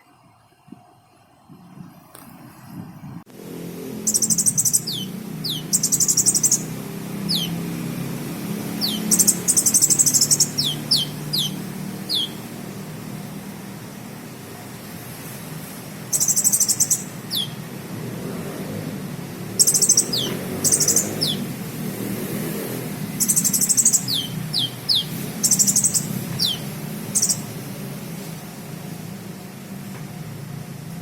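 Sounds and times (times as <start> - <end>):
bird trilling and whistling: 4.0 - 7.8, 8.7 - 12.5, 16.1 - 17.6, 19.6 - 21.5, 23.2 - 27.6.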